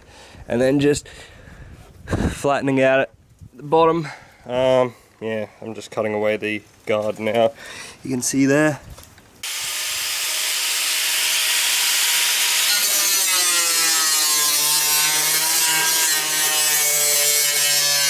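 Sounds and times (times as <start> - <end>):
angle grinder cutting sheet steel: 9.4 - 18.0.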